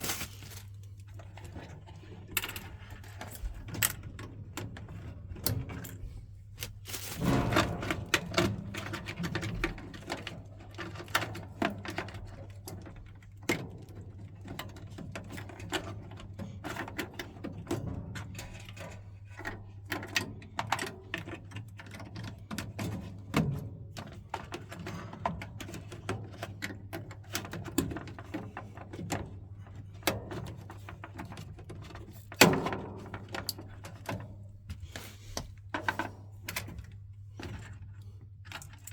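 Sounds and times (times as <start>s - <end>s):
low steady hum: 0.0s - 10.3s
tools and parts clattering: 0.0s - 12.3s.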